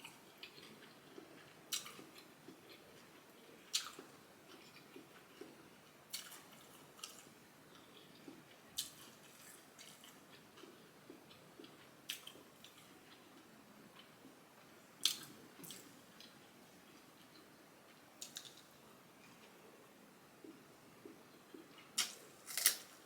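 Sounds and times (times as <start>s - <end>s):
chewing with wet crunches: 0.0s - 14.2s.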